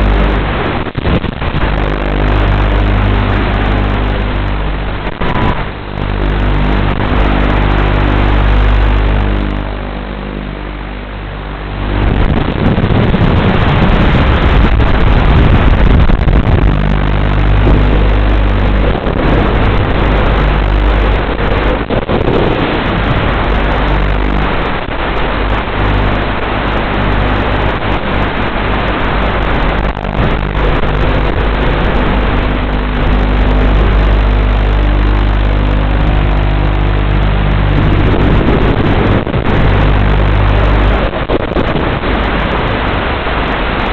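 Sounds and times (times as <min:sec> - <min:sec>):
drone motors and propellers: 0:00.0 - 0:43.9.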